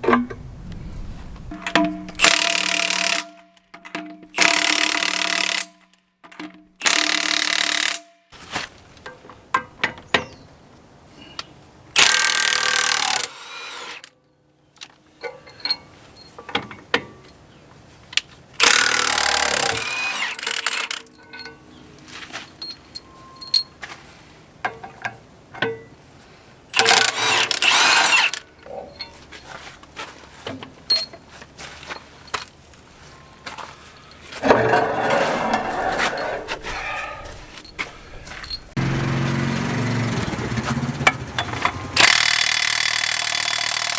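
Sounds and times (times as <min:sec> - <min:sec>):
metallic clicks and knocks: 0:01.4 - 0:06.8
impact wrench hammering: 0:01.5 - 0:03.3, 0:38.8 - 0:43.9.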